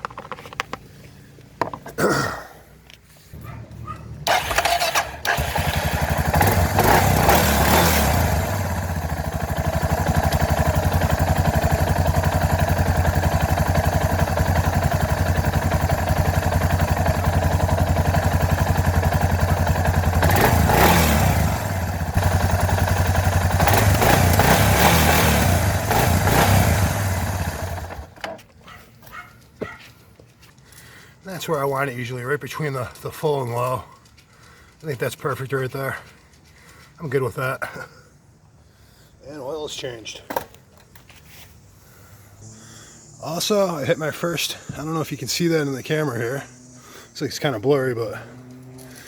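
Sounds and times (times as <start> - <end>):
motorcycle engine idling: 3.6 - 28.2, 41.6 - 49.0.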